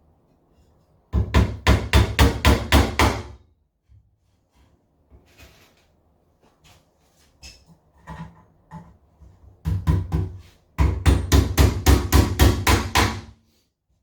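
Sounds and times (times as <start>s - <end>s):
hammer tapping nails: 1.2s - 3.4s, 9.6s - 13.3s.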